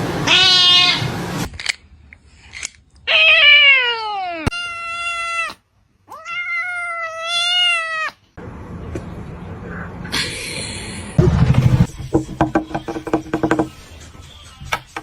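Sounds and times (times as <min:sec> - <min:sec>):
cat meowing: 0:00.3 - 0:01.1, 0:03.1 - 0:08.2.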